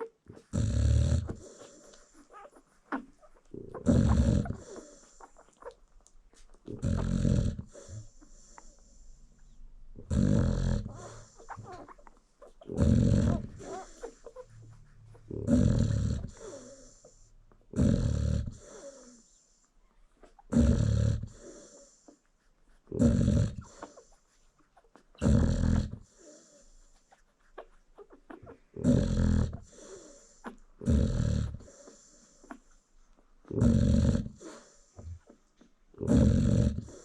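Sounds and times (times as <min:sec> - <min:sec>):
dog snoring: 0:00.3 - 0:02.5, 0:03.5 - 0:05.8, 0:06.6 - 0:12.0, 0:12.6 - 0:19.4, 0:20.3 - 0:22.2, 0:22.9 - 0:24.1, 0:25.2 - 0:26.8, 0:28.8 - 0:32.6, 0:33.4 - 0:37.0
dog breathing quietly: 0:00.3 - 0:37.0.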